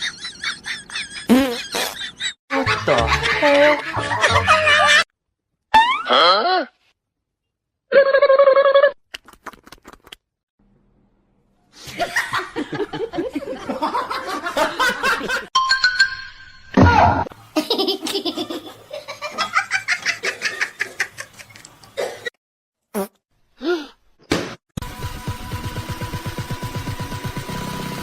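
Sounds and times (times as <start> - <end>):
people laughing heartily: 0.0 - 5.0, 11.8 - 15.5
music: 2.5 - 5.0, 24.8 - 28.0.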